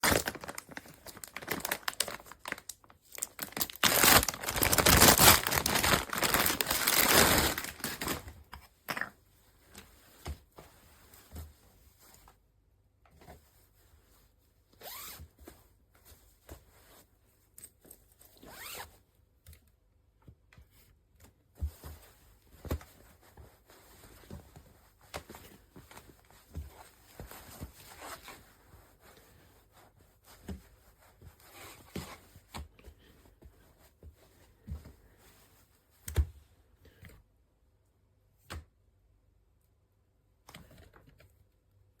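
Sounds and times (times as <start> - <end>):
zipper being pulled: 14.8 - 15.2, 18.4 - 18.9.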